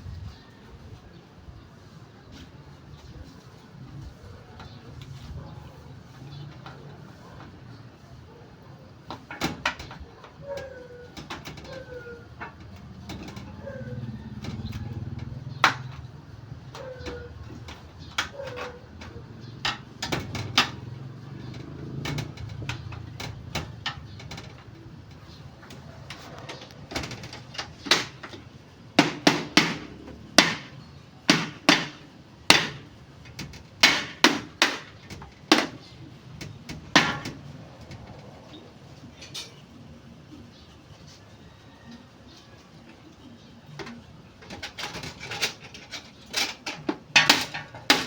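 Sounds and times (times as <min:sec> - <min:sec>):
sharp knocks: 0:29.0 - 0:35.8.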